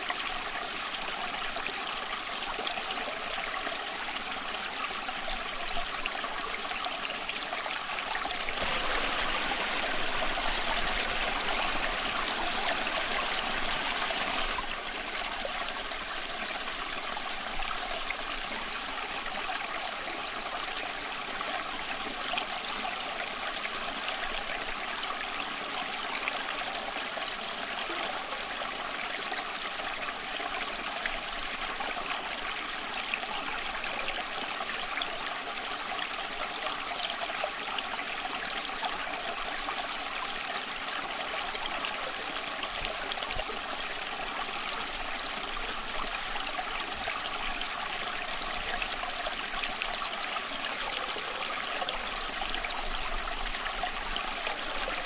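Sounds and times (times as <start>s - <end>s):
stream flowing: 0.0s - 55.0s.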